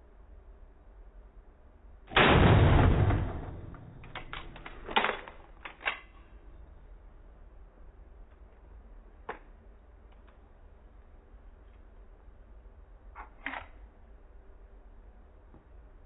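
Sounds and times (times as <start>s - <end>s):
shotgun shot: 2.1s - 4.8s.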